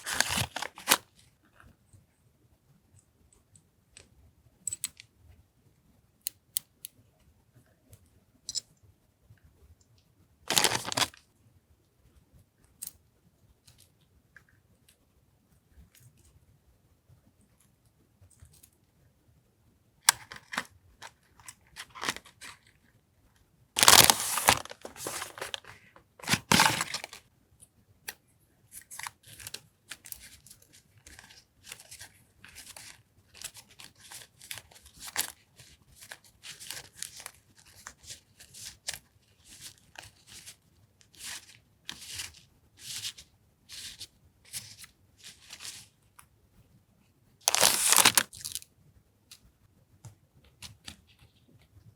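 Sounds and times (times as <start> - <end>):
packaging crinkling and tearing: 0.0 - 1.1, 10.5 - 11.2, 21.4 - 22.6, 23.8 - 27.2, 47.5 - 48.6.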